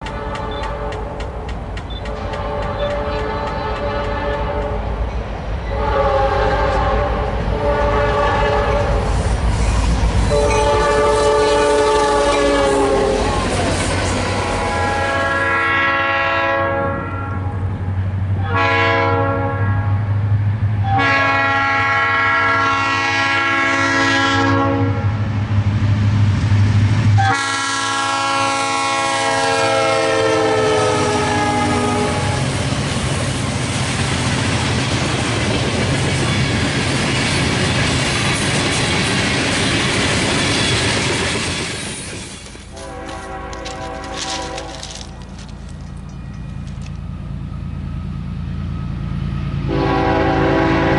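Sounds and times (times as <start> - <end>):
locomotive air horn blasts: 0.0 - 1.2, 2.1 - 4.9, 5.7 - 9.2, 10.3 - 17.7, 18.4 - 20.1, 20.8 - 25.2, 27.2 - 32.5, 42.7 - 45.5, 49.7 - 50.9
train wheel clatter: 0.0 - 5.9, 8.1 - 14.7, 32.2 - 47.2
locomotive engine rumble: 0.0 - 15.7, 24.9 - 50.9.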